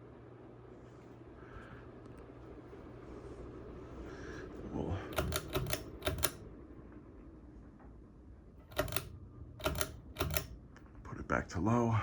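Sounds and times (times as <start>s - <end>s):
pull-chain switch clicking: 5.1s - 6.4s, 8.6s - 10.6s.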